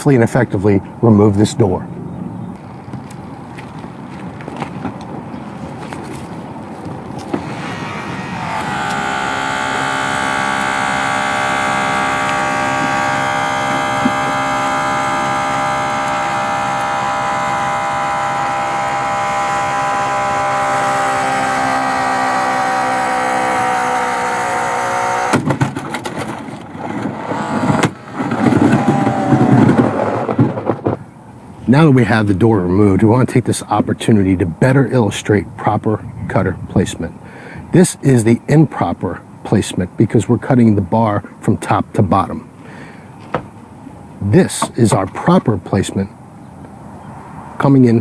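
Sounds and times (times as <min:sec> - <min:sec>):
hydraulic cutter whining: 0:07.2 - 0:31.0, 0:44.3 - 0:45.6.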